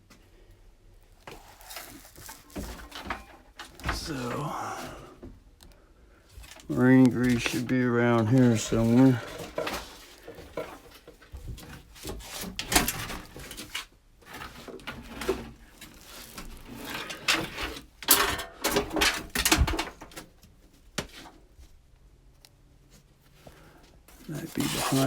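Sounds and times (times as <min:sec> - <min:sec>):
rustling clutter: 0:01.0 - 0:05.2, 0:06.3 - 0:21.9, 0:22.8 - 0:25.0
objects knocked and scraped: 0:01.3 - 0:04.2, 0:08.2 - 0:20.3, 0:24.2 - 0:25.0.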